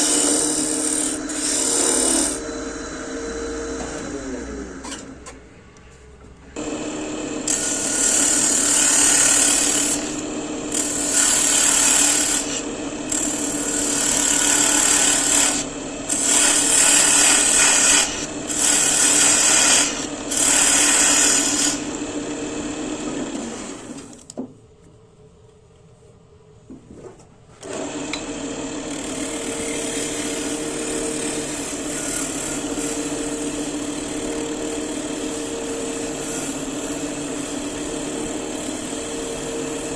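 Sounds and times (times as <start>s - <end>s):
power tool cutting wood: 0.0s - 5.2s, 6.6s - 24.2s, 27.6s - 39.9s
power tool motor hum: 0.0s - 5.2s, 6.6s - 24.2s.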